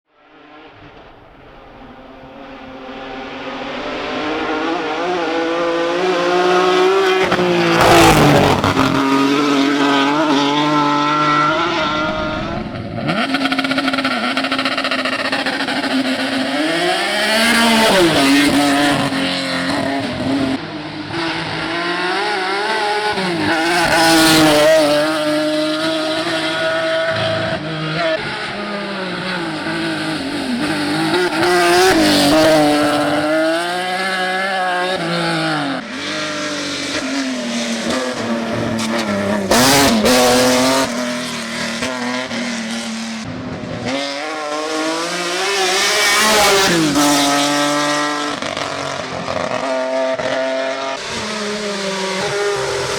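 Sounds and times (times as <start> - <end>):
race car engine revving: 0.4 - 52.9.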